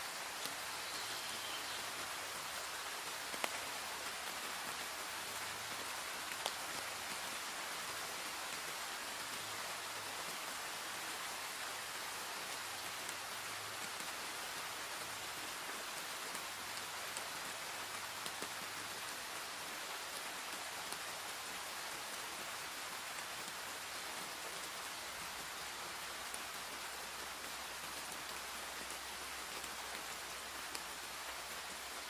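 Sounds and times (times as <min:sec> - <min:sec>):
steady rain falling: 0:00.0 - 0:32.0
raindrops ticking: 0:06.3 - 0:06.6.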